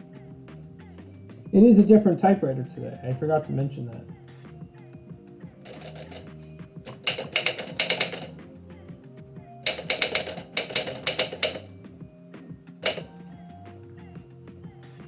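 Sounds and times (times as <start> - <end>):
background music: 0.0 - 15.0
typewriter key strikes: 5.7 - 8.4, 9.6 - 11.7, 12.8 - 13.2.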